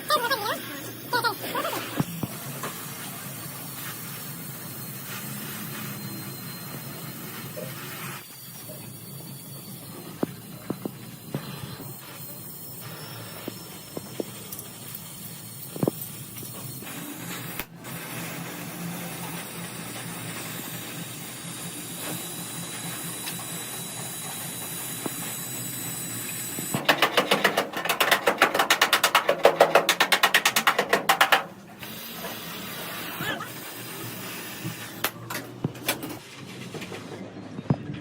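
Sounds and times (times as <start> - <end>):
power tool hammering: 12.8 - 36.2.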